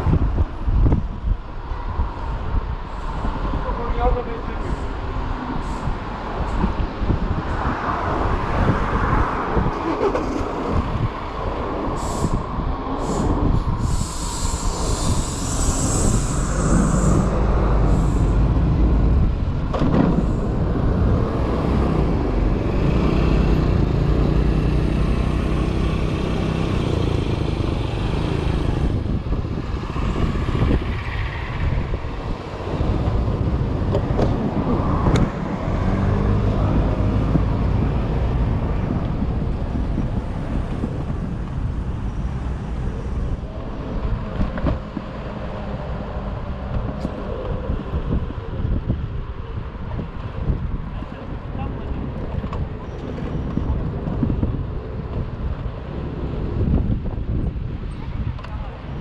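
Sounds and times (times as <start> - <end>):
vehicle engines: 0.0 - 59.0
wind rumble on microphone: 0.0 - 59.0.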